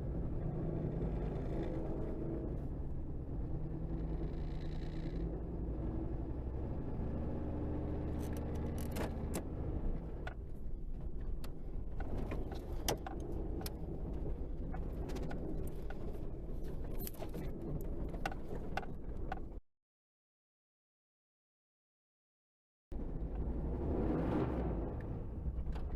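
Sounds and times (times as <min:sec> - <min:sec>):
clicks and light rattles: 0:10.2 - 0:19.6.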